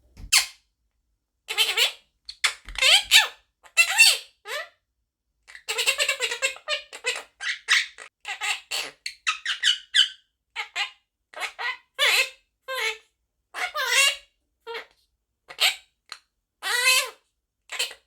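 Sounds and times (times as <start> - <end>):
parrot chattering and squeaking: 1.5 - 4.7, 5.5 - 13.0, 13.6 - 14.2, 16.6 - 18.0.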